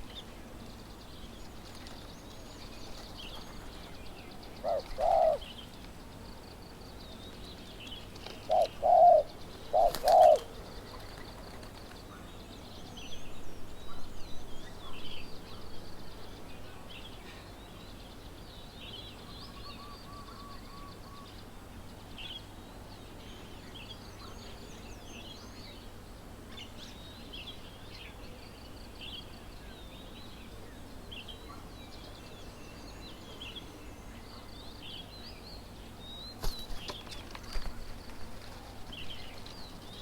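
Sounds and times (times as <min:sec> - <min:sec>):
small birds chirping: 0:00.0 - 0:12.9, 0:26.6 - 0:40.0.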